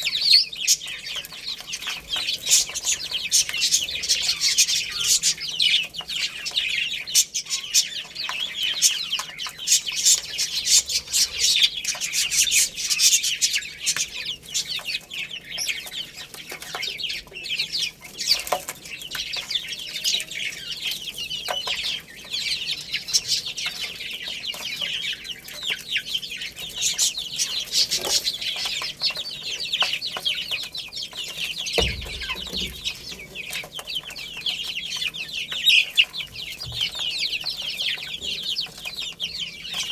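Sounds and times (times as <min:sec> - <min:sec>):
baby chicks cheeping: 0:00.0 - 0:39.9
low thump: 0:31.8 - 0:33.1.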